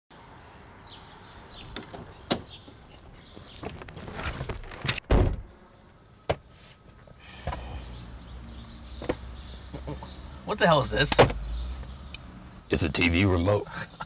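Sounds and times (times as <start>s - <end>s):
door shutting with heavy thud: 5.0s - 5.5s
faint bird chirp: 5.4s - 14.0s.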